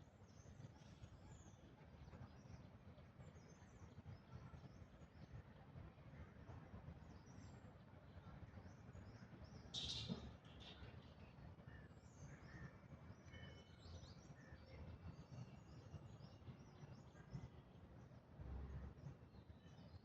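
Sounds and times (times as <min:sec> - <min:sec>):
small birds chirping: 0:09.6 - 0:11.0
loud short bird call: 0:09.8 - 0:10.8.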